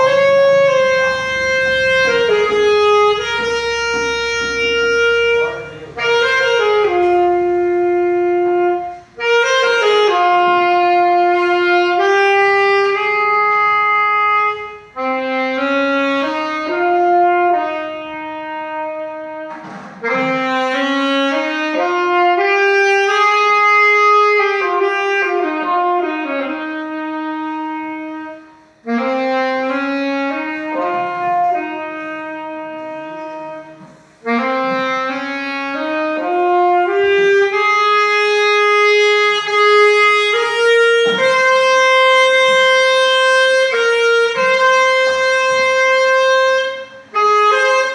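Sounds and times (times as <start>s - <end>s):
saxophone playing slow melody: 0.0s - 47.9s
player breathing: 33.8s - 34.2s.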